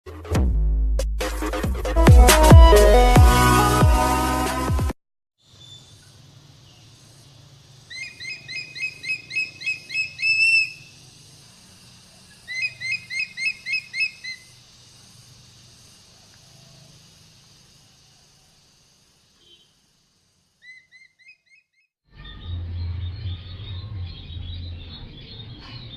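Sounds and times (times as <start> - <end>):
eagle calling: 7.9 - 11.0, 12.4 - 14.5, 20.6 - 21.6.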